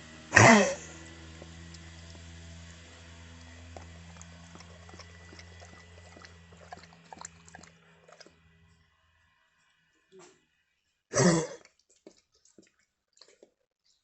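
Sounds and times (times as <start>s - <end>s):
low hum: 0.0s - 9.5s
dog mouth clicks and wet smacks: 1.4s - 2.4s, 3.3s - 8.4s, 11.6s - 13.6s.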